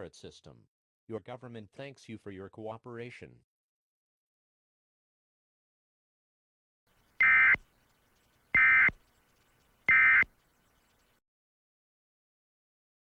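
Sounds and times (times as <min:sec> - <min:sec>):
digital data bursts: 0:07.2 - 0:07.6, 0:08.5 - 0:09.0, 0:09.9 - 0:10.3.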